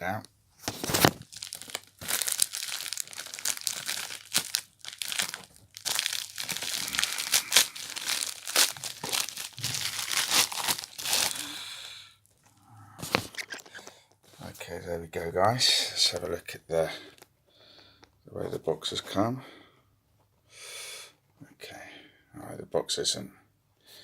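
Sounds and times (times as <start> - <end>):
packaging crinkling and tearing: 0.6 - 11.9.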